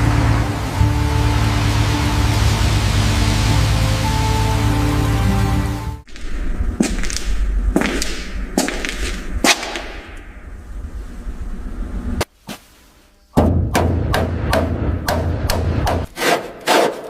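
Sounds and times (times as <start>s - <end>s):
low rumble: 6.0s - 12.3s.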